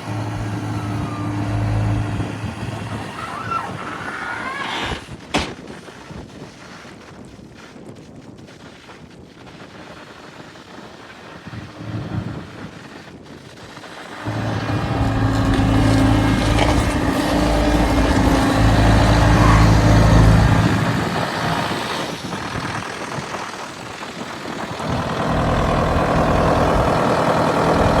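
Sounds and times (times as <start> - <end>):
diesel engine running: 0.0 - 4.5, 14.2 - 23.6, 24.7 - 28.0.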